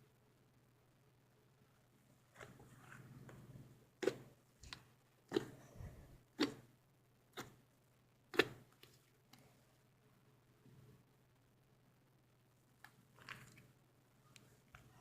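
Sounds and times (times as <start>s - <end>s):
slime popping: 4.0s - 5.6s.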